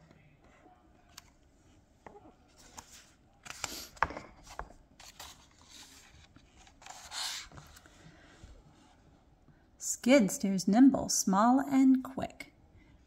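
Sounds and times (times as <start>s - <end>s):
book pages turning: 2.4s - 8.0s.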